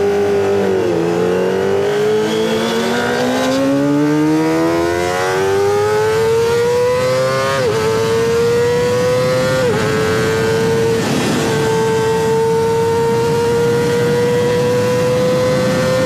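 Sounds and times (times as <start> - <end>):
motorcycle engine revving high: 0.0 - 16.0.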